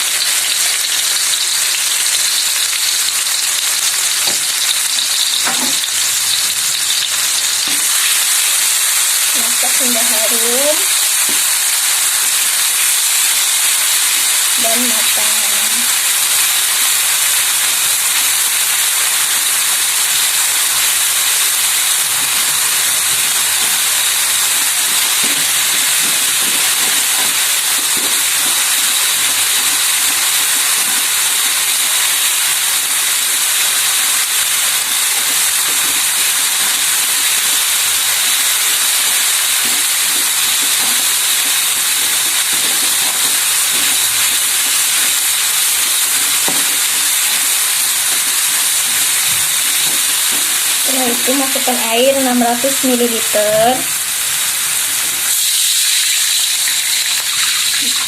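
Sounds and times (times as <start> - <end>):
spice paste sizzling in hot oil: 0.0 - 58.0.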